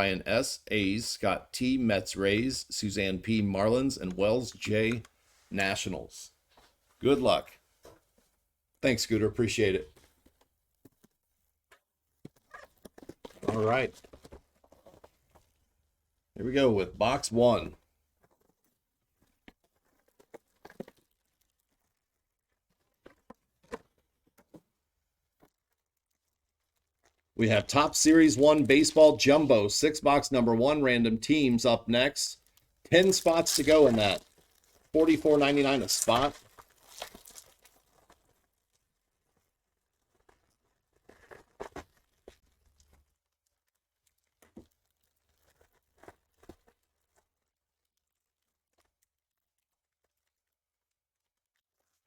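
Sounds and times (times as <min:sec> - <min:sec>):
card packs being handled and opened: 0:00.8 - 0:08.2, 0:08.9 - 0:15.7, 0:16.4 - 0:52.0
wrapper crinkling and tearing: 0:32.4 - 0:52.0.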